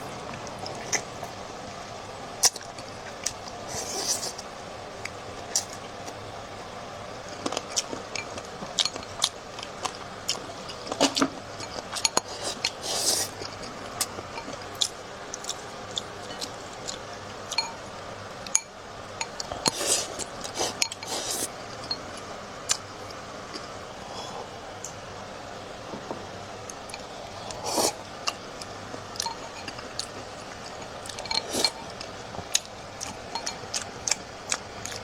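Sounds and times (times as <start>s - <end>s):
chewing and mouth sounds: 26.7s - 35.0s.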